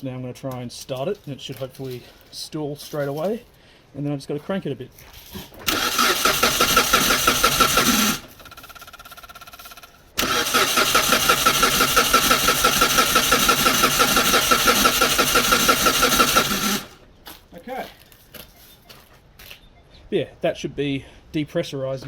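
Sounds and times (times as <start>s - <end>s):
engine cranking by starter: 5.6s - 17.0s.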